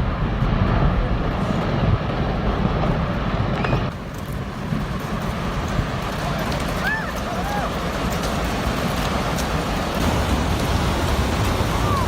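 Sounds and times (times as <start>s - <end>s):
heavy low rumbling: 0.0s - 12.0s.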